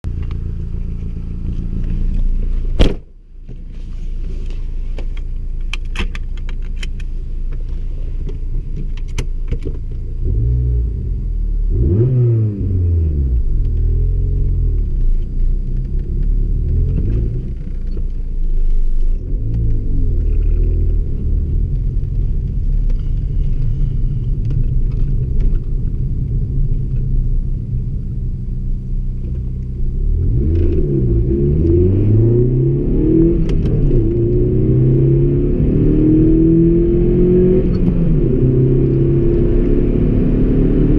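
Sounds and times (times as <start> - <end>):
sharp knock: 2.8 - 3.1
car engine revving: 10.2 - 15.0, 29.1 - 40.9.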